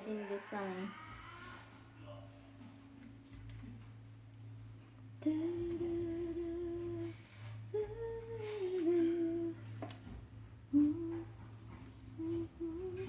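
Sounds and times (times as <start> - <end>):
low electrical hum: 0.0 - 13.0
woman humming: 5.2 - 13.0.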